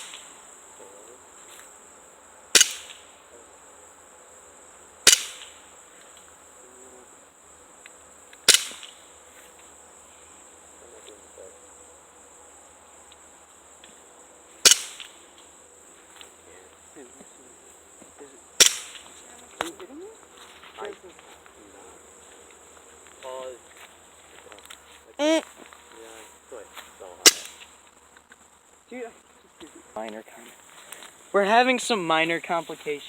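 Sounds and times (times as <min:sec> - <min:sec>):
high-pitched insect buzz: 0:00.0 - 0:33.0
bb gun shots popping: 0:02.6 - 0:03.1, 0:05.0 - 0:05.6, 0:08.4 - 0:09.0, 0:14.6 - 0:15.2, 0:18.6 - 0:19.1, 0:27.3 - 0:27.6.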